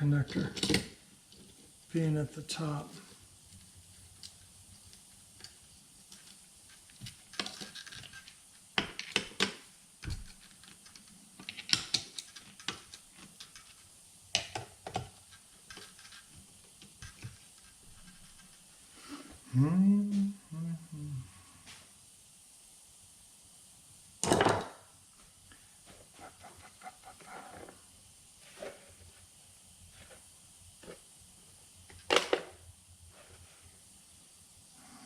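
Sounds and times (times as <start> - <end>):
metal parts clicking and knocking: 7.3 - 13.7.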